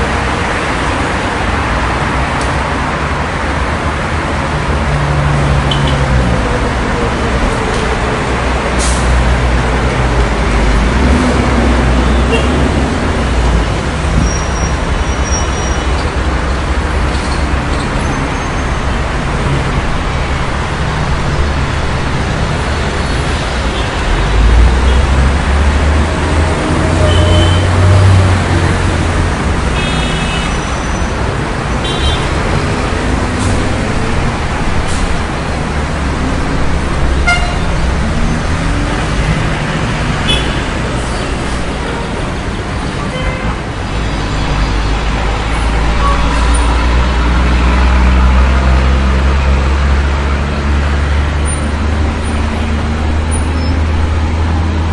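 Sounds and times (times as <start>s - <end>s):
car bus and truck engines: 0.0s - 54.9s
heavy vehicles rumbling past: 0.0s - 54.9s
high brake squeals: 14.2s - 16.0s.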